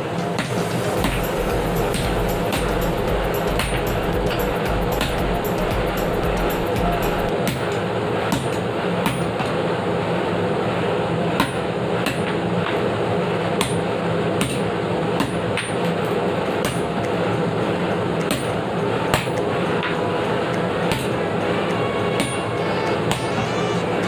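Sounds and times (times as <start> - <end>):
steady mechanical hum: 0.0 - 24.0
hammer striking metal: 0.2 - 7.7, 16.6 - 17.1, 18.2 - 20.0, 20.9 - 21.2, 22.2 - 22.5.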